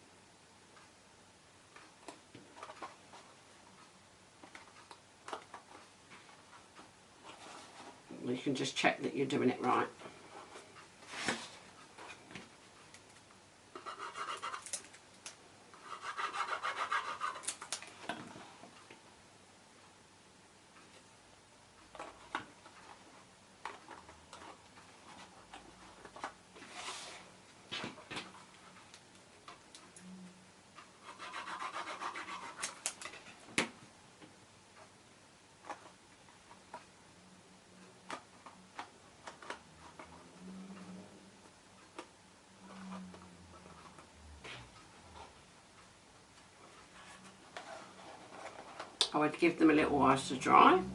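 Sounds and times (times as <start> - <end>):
card rubbing rustle: 13.8 - 15.0, 15.8 - 18.0, 21.9 - 29.1, 30.8 - 33.4, 46.6 - 49.0
card stock rubbed by hand: 26.6 - 27.3.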